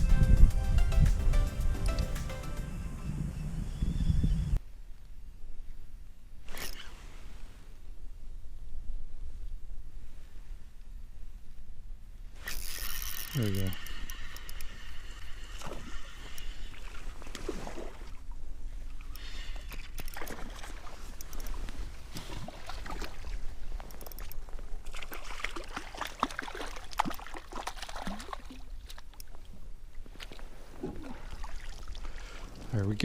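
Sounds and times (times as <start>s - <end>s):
water splashing against kayak: 13.4s - 32.7s.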